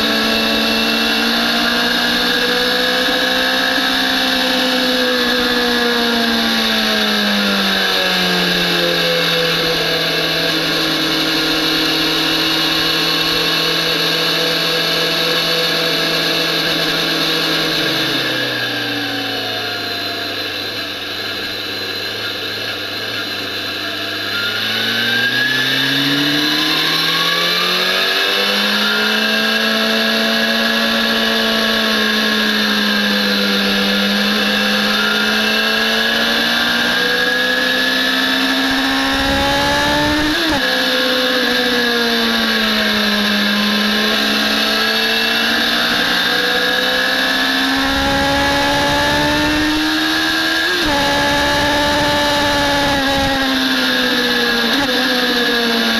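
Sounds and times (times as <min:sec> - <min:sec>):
sport bike engine revving: 0:00.0 - 0:55.9.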